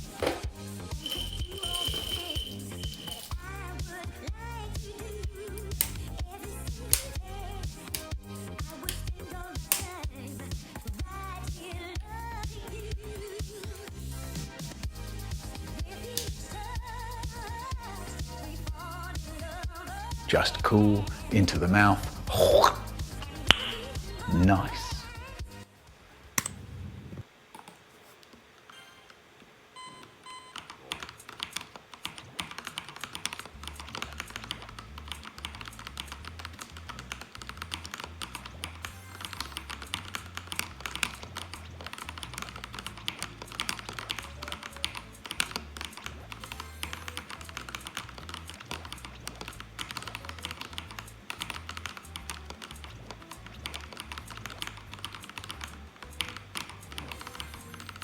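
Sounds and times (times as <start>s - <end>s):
background music: 0.0s - 26.5s, 32.2s - 58.0s
mechanical keyboard typing: 1.0s - 3.4s, 29.9s - 58.0s.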